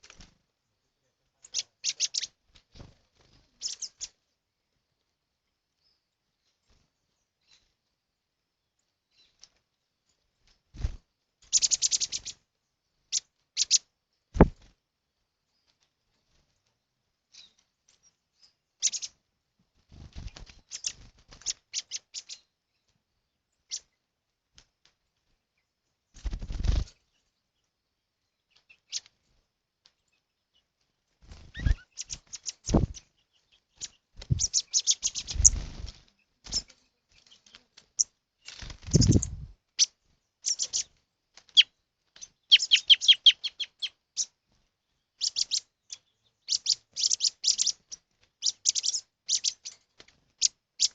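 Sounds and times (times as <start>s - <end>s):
wing flapping: 0.0s - 0.4s, 10.6s - 12.4s, 14.4s - 14.8s, 19.8s - 22.0s, 26.1s - 27.0s, 31.1s - 33.1s, 33.8s - 39.6s
small birds chirping: 0.0s - 50.9s.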